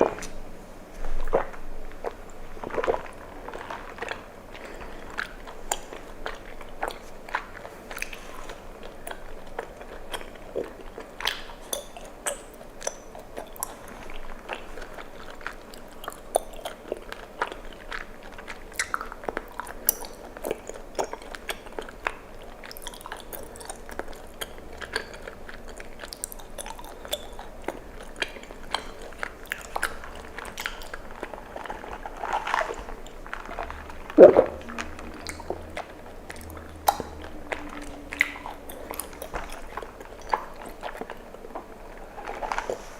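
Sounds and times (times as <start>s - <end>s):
chewing tapioca pearls: 0.0s - 42.9s.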